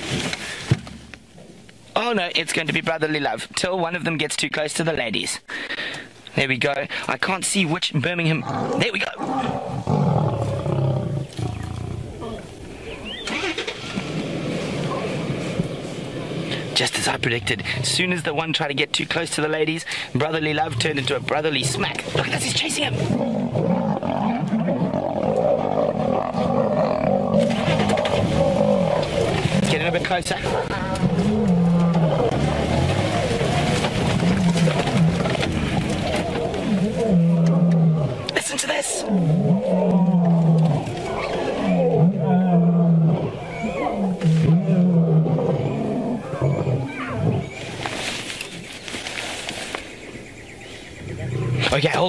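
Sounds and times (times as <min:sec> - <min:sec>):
lions snarling and growling: 0:08.3 - 0:18.3, 0:20.4 - 0:47.9, 0:51.0 - 0:52.0.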